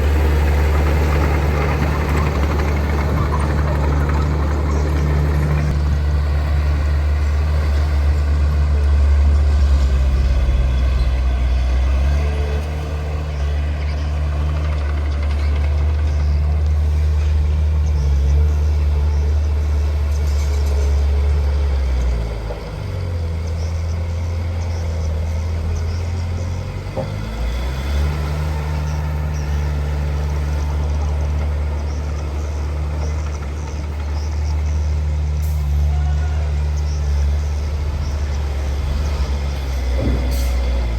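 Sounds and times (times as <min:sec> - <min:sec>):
heavy diesel engine droning: 0:00.0 - 0:40.9.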